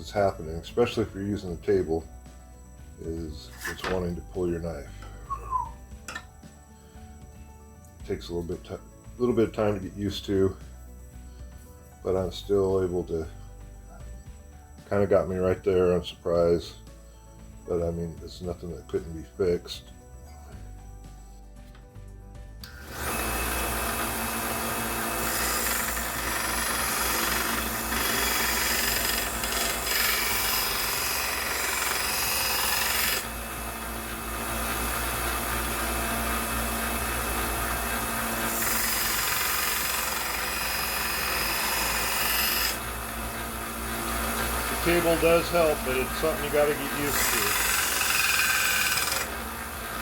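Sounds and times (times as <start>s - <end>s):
belt grinder grinding steel: 3.4s - 4.5s, 22.6s - 50.0s
motor hum: 22.6s - 45.2s.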